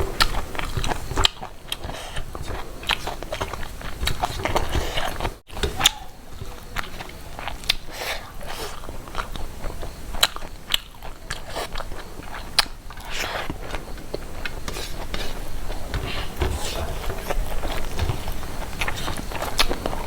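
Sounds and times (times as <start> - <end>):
person chewing and biting: 0.0 - 20.0.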